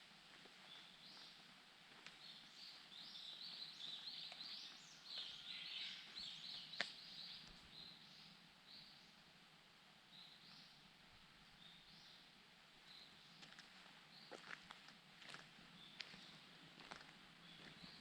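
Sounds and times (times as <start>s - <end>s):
small bird chirping: 2.3s - 9.0s.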